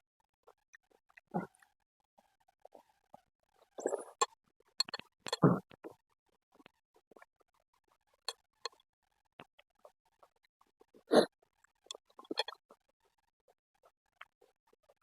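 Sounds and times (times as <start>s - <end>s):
person chewing food: 3.7s - 6.0s, 11.6s - 12.7s.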